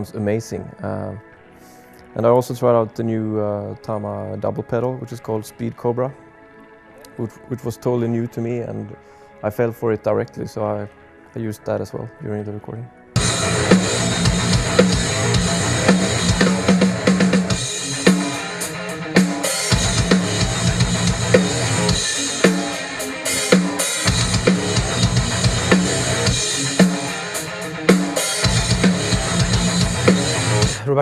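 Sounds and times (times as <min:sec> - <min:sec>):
drum kit bass and snare hits: 0:13.2 - 0:30.8
heavy metal band playing: 0:13.2 - 0:30.9.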